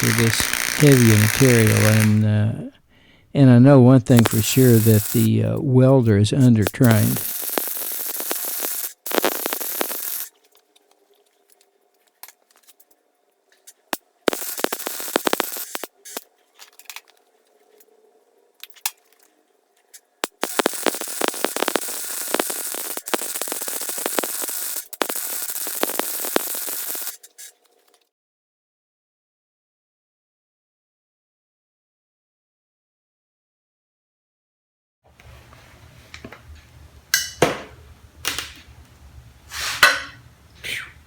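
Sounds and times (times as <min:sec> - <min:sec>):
welding arc hissing crackle: 0:00.0 - 0:02.3, 0:04.1 - 0:11.6, 0:13.6 - 0:17.9, 0:19.9 - 0:28.0.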